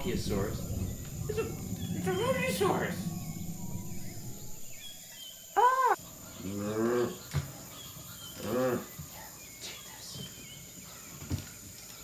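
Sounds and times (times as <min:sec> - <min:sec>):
low thump: 0:00.0 - 0:05.2
birds: 0:00.0 - 0:12.0
faint insects: 0:00.0 - 0:12.0
dinosaur calls: 0:00.1 - 0:06.0.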